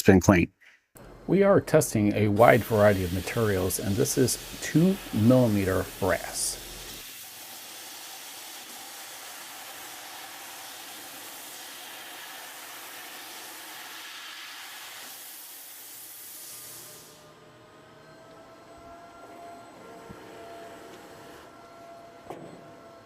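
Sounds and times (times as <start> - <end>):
faint machine hum: 1.0 - 7.0
hiss of high-pressure gas: 2.4 - 17.3.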